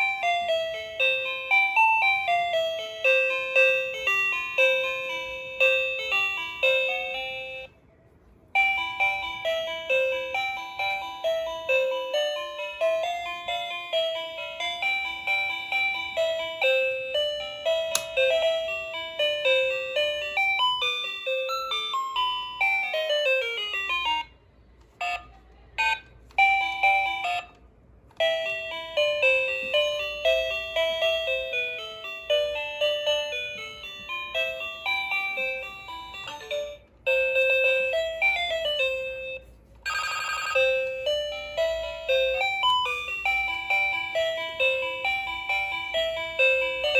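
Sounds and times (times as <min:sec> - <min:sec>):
toy phone beeping tunes: 0:00.0 - 0:07.8, 0:08.6 - 0:46.9.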